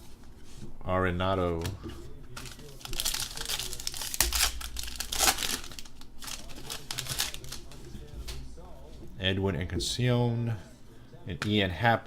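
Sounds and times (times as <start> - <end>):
wrapper crinkling and tearing: 2.3 - 7.9.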